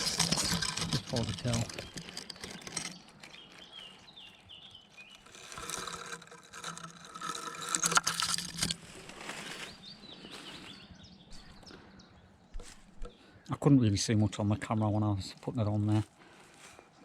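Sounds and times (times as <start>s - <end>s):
branches rustling and crackling: 0.0s - 11.9s, 12.5s - 13.4s, 14.6s - 17.0s
songbird calling: 2.9s - 5.3s, 9.5s - 14.2s.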